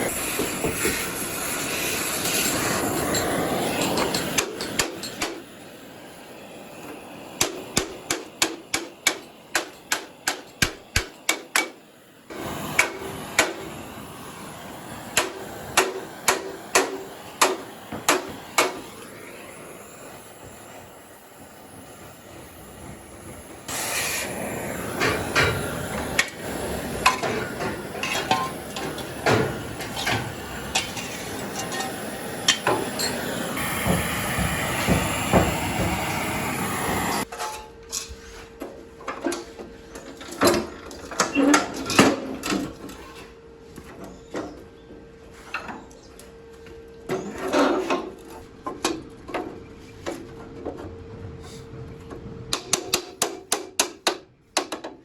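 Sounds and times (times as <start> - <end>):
steady noise: 0.0 - 37.3.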